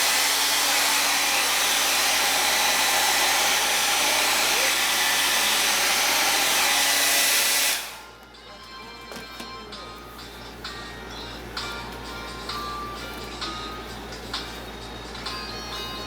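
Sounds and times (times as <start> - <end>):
hair dryer blowing: 0.0 - 8.3.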